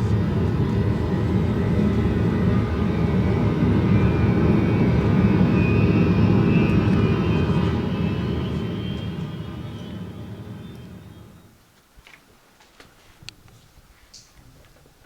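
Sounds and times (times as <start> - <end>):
loud engine rumble: 0.0 - 11.5
faint high whine: 0.0 - 11.6.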